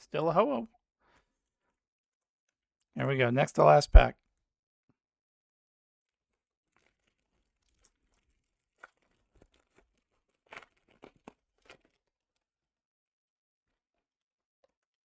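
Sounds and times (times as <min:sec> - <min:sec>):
foil wrapper crinkling: 0:06.1 - 0:12.5.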